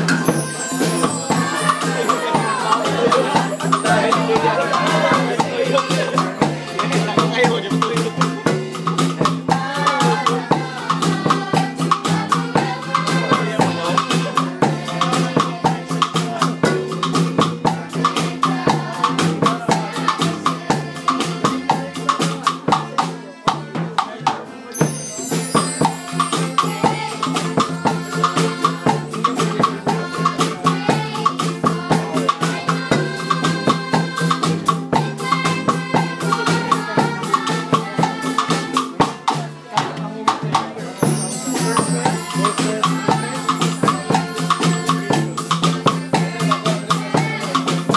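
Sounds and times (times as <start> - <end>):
sustained pitched instruments: 0.0 - 7.9, 24.6 - 30.0
drum: 0.0 - 47.9
shaker beat: 0.0 - 47.9.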